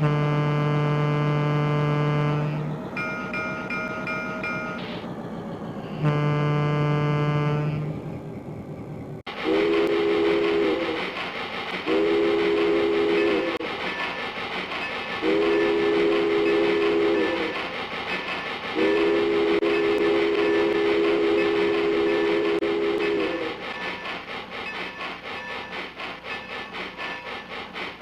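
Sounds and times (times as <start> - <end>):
single-note horn: 0.0 - 2.7, 6.0 - 7.9
train chime horn blasts: 0.0 - 2.7, 6.0 - 7.9, 9.4 - 10.8, 11.9 - 13.6, 15.2 - 17.5, 18.8 - 23.5
train running noise: 0.0 - 28.0.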